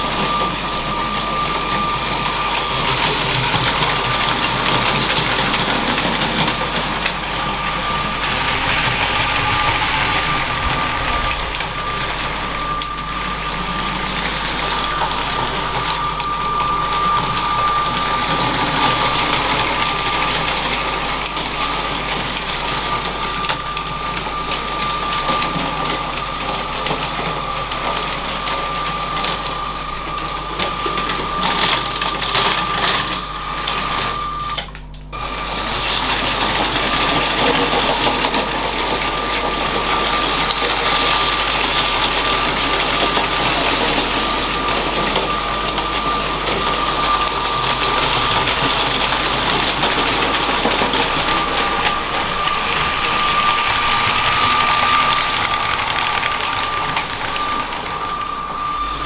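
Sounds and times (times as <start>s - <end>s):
toy train motor whining: 0.0s - 27.9s, 30.0s - 59.0s
plastic wheels clicking on track: 2.5s - 13.1s, 14.2s - 28.1s, 46.4s - 59.0s.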